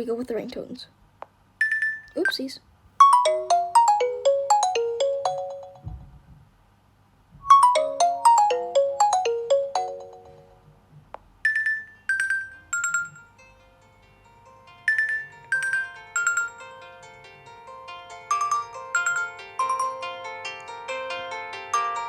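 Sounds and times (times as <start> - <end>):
chiming phone ringtone: 1.6 - 2.1, 3.0 - 6.0, 7.5 - 10.6, 11.5 - 13.3, 14.9 - 16.9, 18.2 - 20.3.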